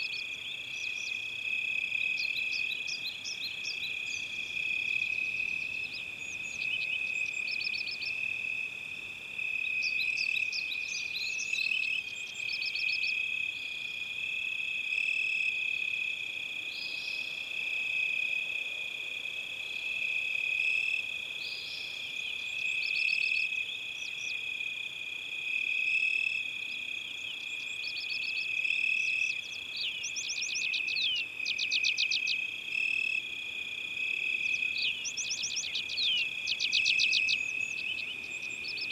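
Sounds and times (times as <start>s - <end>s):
birds chirping and trilling: 27.1s - 32.5s, 34.2s - 38.9s.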